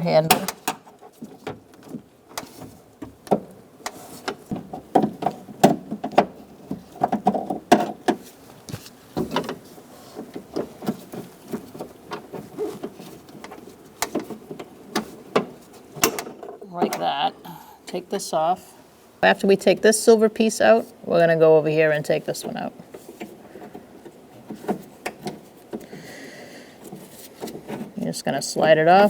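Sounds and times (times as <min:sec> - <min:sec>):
metal and plastic clicking and rattling: 0:00.0 - 0:17.1, 0:22.0 - 0:26.1.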